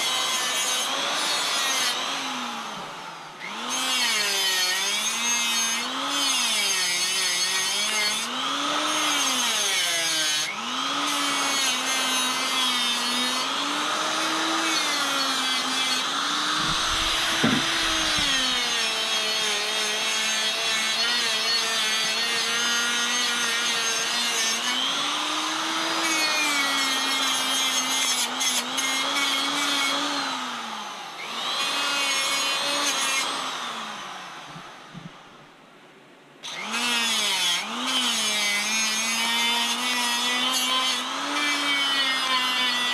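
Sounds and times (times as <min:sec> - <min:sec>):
power tool motor whirring: 0:13.1 - 0:19.7
brief knock: 0:16.6 - 0:18.8.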